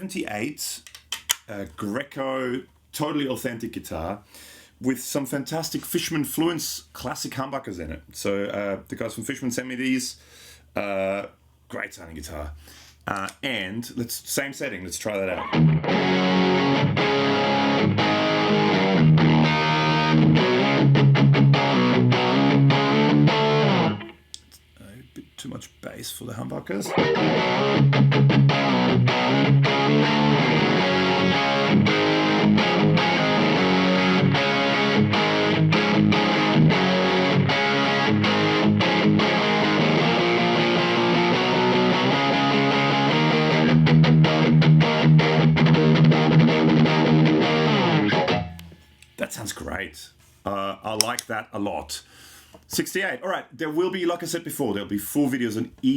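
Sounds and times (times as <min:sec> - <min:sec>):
overdriven electric guitar chords: 0:15.4 - 0:24.2, 0:26.9 - 0:48.9.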